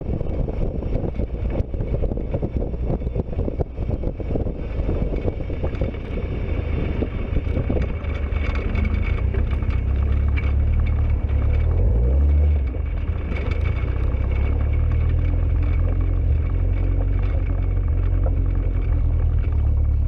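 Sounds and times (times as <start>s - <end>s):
vehicle engine rumble: 0.0s - 20.0s
wind buffeting microphone: 0.0s - 20.0s.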